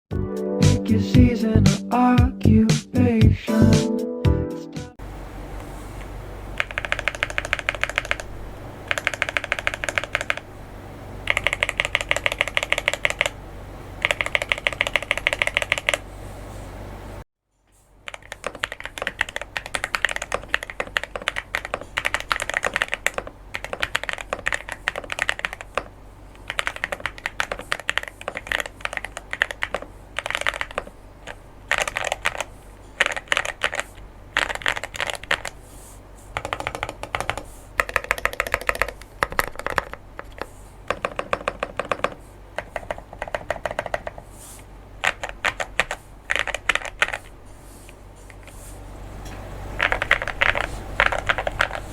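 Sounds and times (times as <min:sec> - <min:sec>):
mechanical keyboard typing: 0:06.6 - 0:10.5, 0:11.2 - 0:13.4, 0:14.0 - 0:16.0, 0:18.0 - 0:35.6, 0:36.4 - 0:44.2, 0:45.0 - 0:47.3, 0:49.8 - 0:51.9.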